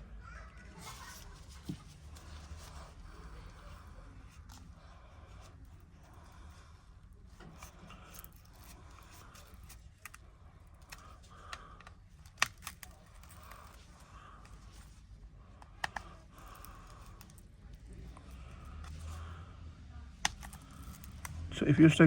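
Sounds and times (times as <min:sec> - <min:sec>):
pry tool scraping and clicking: 0:10.8 - 0:13.8, 0:20.2 - 0:21.4.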